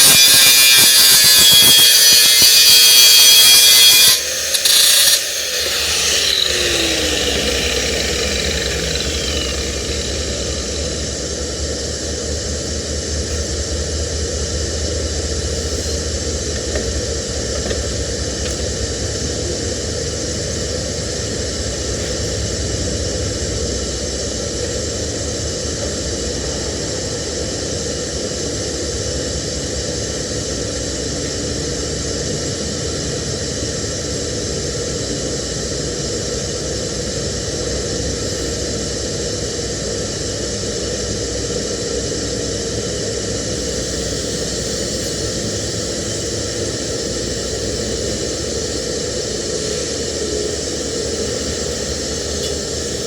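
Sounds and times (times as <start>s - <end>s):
welding arc hissing: 0.0s - 13.9s
faint hum: 4.2s - 53.0s.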